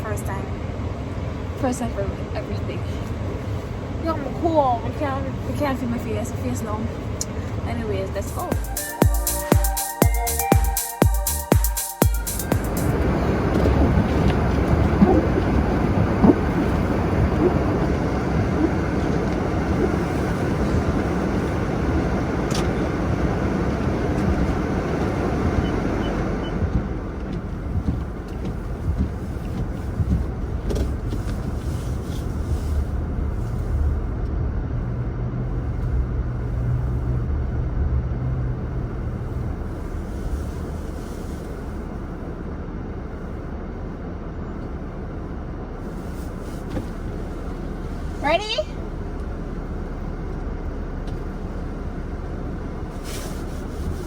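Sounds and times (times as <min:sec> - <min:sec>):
car engine humming: 0:00.0 - 0:54.0
loud rushing noise: 0:08.3 - 0:14.8.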